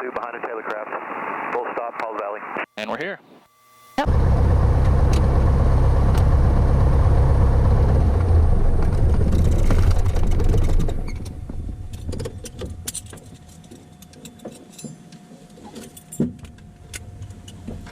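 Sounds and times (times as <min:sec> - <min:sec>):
aircraft engine idling: 0:04.0 - 0:12.9.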